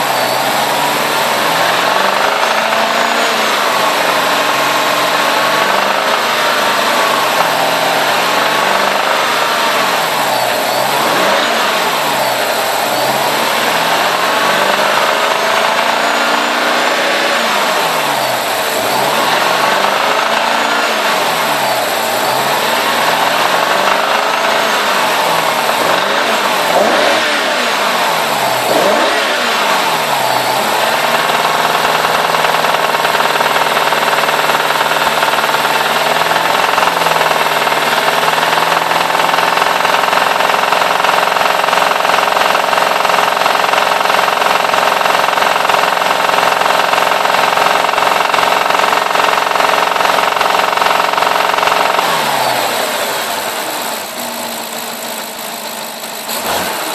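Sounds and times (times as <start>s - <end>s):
car engine revving: 0.0s - 56.9s.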